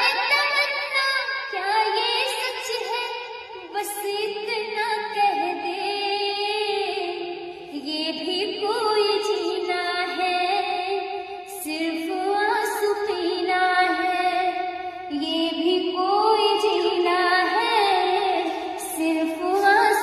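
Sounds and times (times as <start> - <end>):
woman singing: 0.0 - 20.0.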